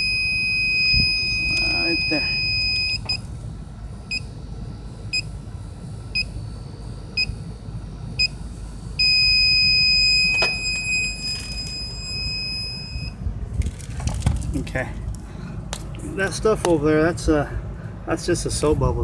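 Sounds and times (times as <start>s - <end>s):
leak detector beeping: 0.0s - 3.2s, 4.1s - 4.3s, 6.1s - 6.4s, 7.2s - 7.4s, 8.2s - 8.4s, 9.0s - 13.2s
steady alarm tone: 0.0s - 13.2s.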